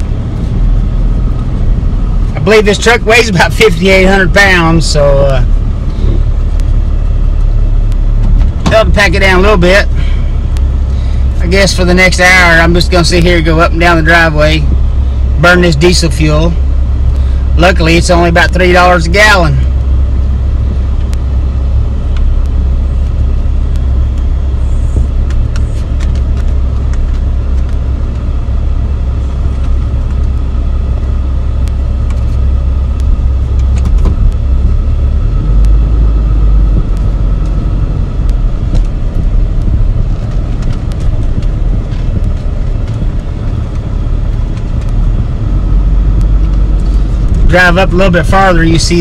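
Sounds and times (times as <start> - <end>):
diesel pickup truck droning: 0.0 - 49.0
gravel ticks: 25.0 - 28.4, 29.3 - 49.0.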